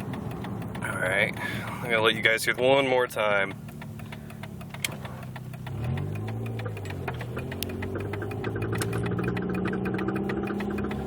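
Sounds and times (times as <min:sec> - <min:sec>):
rapid clicking from axle joint: 0:00.0 - 0:11.0
car engine pulling away: 0:03.4 - 0:11.0.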